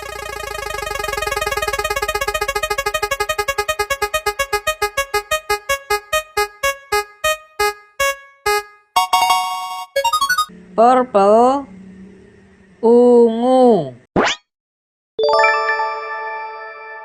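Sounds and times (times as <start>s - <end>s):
electronic keyboard note repeating: 0.0s - 10.5s.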